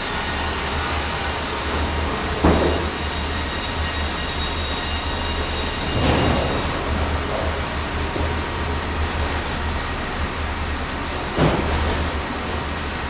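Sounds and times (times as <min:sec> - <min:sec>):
high-pitched machine whine: 0:00.0 - 0:06.9
sawmill machinery humming: 0:00.0 - 0:07.1.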